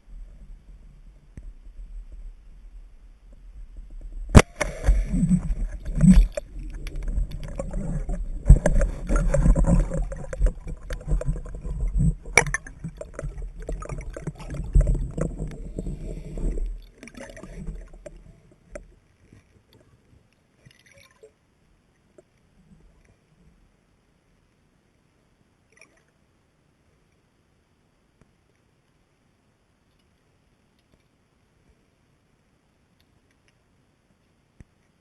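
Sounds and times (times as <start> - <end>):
low rumble: 0.0 - 18.6
water sloshing and gurgling: 0.0 - 23.2.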